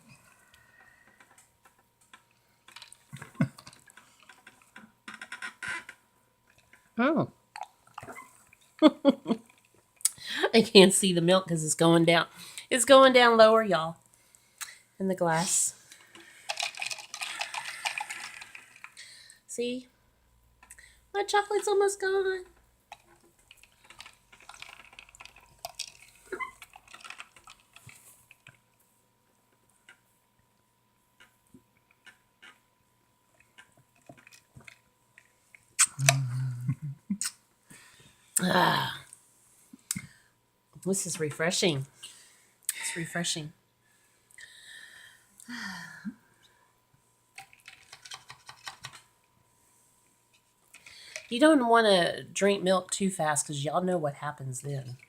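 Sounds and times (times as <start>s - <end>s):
straw clicks and crackles: 0.4s - 8.8s, 9.4s - 10.2s, 15.9s - 19.2s, 22.5s - 28.9s, 31.2s - 32.7s, 33.3s - 36.5s, 47.3s - 49.1s
drinking through a straw: 16.4s - 19.0s
sipping through a straw: 35.8s - 36.5s.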